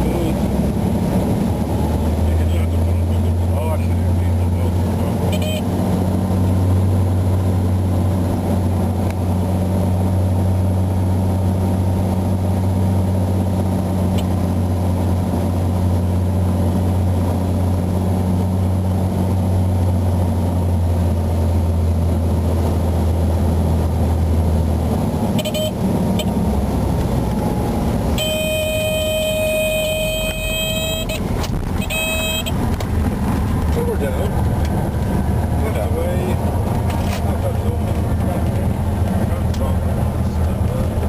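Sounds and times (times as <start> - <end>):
aircraft engine and propeller droning: 0.0 - 41.0
stall warning horn: 5.3 - 5.7, 25.4 - 26.4, 28.1 - 32.6.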